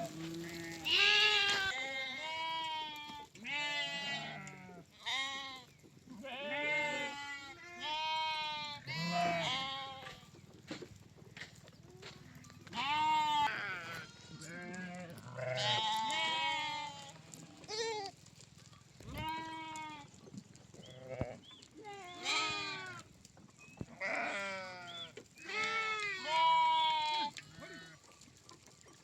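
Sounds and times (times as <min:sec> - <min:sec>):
sheep and goats bleating: 0:00.0 - 0:10.4, 0:12.0 - 0:28.6.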